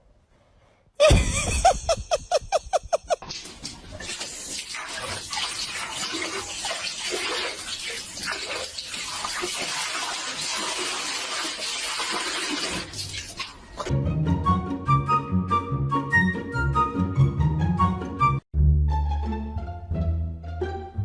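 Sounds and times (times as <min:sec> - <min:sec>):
water running and splashing: 0:03.2 - 0:13.6
instrumental music: 0:13.9 - 0:21.0.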